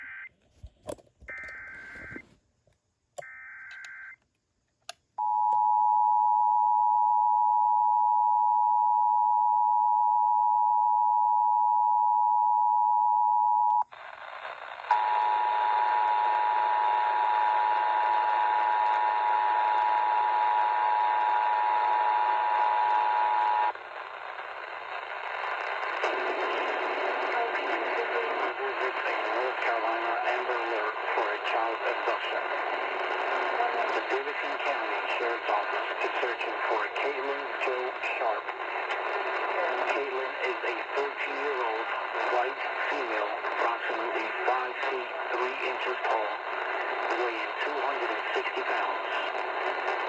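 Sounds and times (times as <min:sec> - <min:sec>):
radio hiss: 0:01.6 - 0:02.3, 0:15.6 - 0:50.0.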